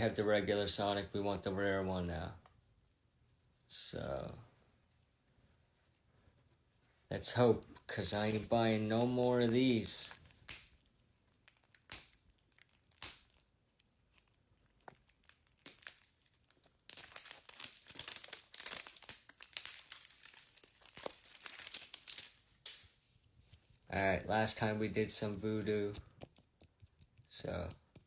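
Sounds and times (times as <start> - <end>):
packaging crinkling and tearing: 7.7 - 22.8.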